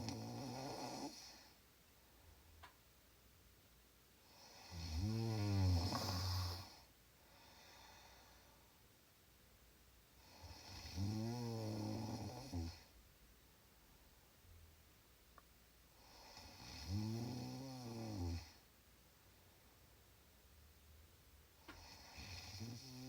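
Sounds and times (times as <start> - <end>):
loud rattling snores: 0.0 - 1.3, 4.5 - 6.8, 10.3 - 12.8, 16.2 - 18.5.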